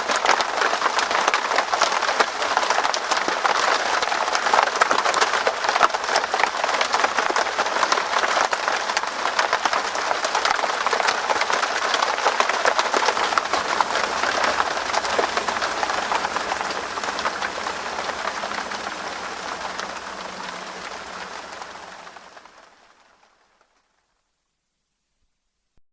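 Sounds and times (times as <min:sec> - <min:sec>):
rain on tent fabric: 0:00.0 - 0:24.3.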